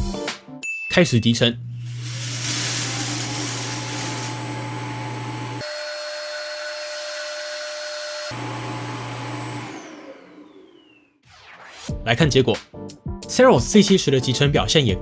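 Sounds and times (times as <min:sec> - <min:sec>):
suction motor rushing and humming: 0:01.8 - 0:11.0.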